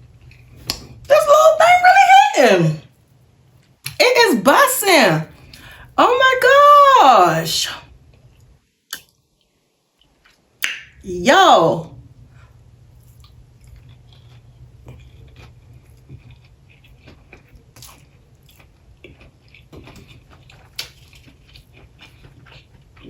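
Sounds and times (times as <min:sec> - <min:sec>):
person chewing crunchy food: 0:13.2 - 0:23.0.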